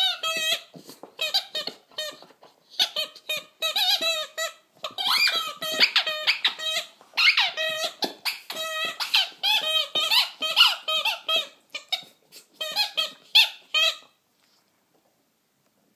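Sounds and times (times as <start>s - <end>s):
squeaky rubber toy squeezed: 0.0s - 14.2s.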